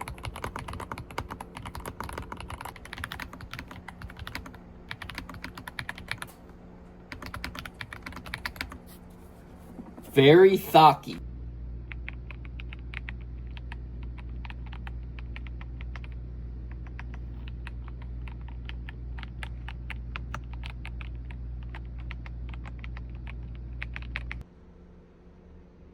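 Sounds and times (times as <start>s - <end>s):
mechanical keyboard typing: 0.0s - 6.4s, 7.1s - 8.8s, 11.9s - 24.4s
steady low hum: 0.0s - 25.9s.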